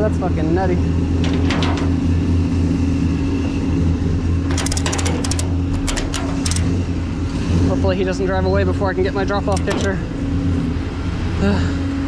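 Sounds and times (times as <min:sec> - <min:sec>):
rapid clicking: 0:04.4 - 0:07.0, 0:09.5 - 0:10.1.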